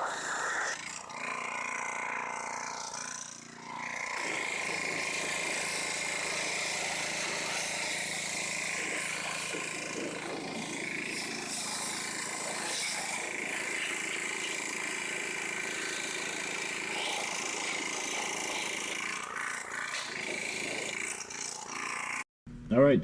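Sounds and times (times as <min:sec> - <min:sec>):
motor running: 0:00.0 - 0:22.3.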